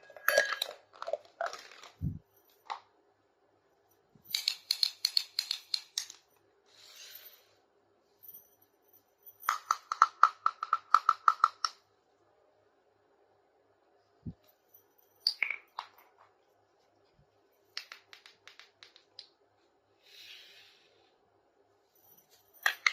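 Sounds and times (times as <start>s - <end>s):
plastic toy pieces clicking: 4.3s - 6.2s, 9.5s - 11.8s.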